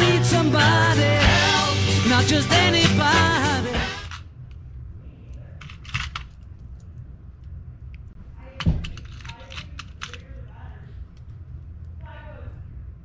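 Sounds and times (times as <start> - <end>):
faint low hum: 4.1 - 13.0.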